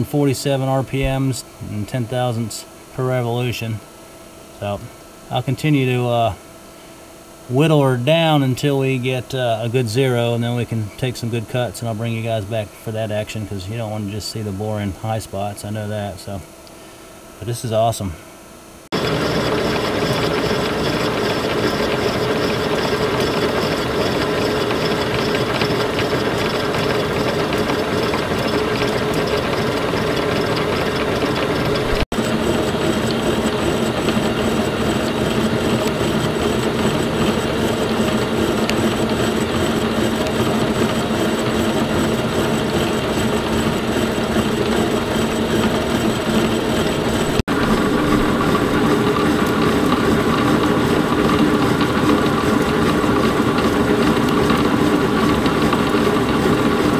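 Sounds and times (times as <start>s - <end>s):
milling machine cutting metal: 19.0s - 56.9s.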